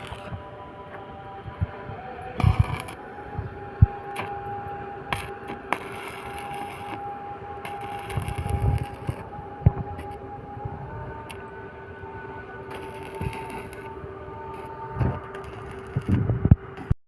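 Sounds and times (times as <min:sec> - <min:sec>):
crackling welding arc: 0:00.0 - 0:00.4, 0:02.3 - 0:03.2, 0:03.8 - 0:10.2, 0:12.6 - 0:17.0
two-tone machine hum: 0:00.0 - 0:17.0.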